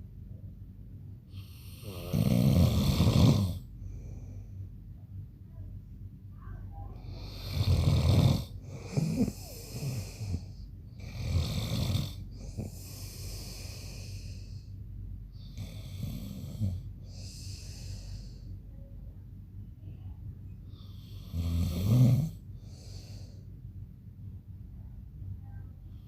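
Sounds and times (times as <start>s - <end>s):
man snoring: 1.4s - 3.7s, 7.1s - 14.6s, 15.4s - 18.4s, 20.8s - 23.3s.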